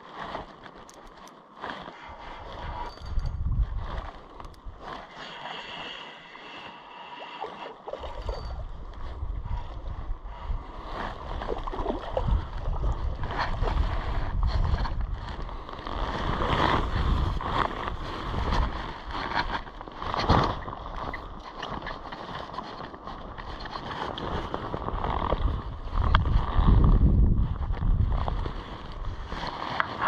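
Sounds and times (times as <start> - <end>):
wind buffeting microphone: 2.1 - 5.0, 8.0 - 21.8, 23.4 - 30.0.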